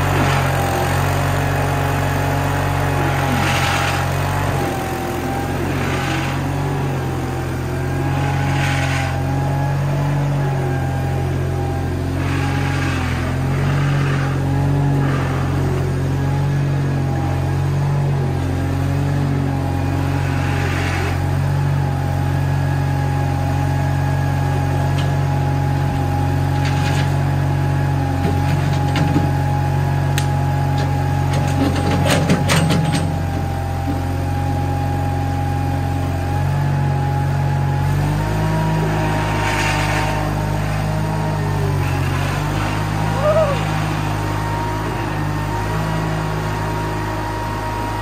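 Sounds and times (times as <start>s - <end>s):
skid steer engine running: 0.0s - 48.0s
clanks and rattles: 30.8s - 34.0s
steady whine: 38.1s - 48.0s.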